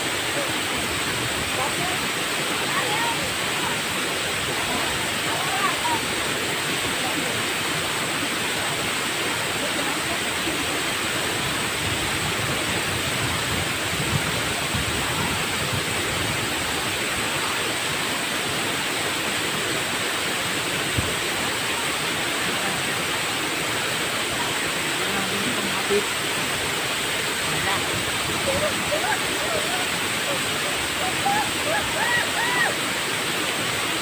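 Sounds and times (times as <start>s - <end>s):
waterfall roaring: 0.0s - 34.0s.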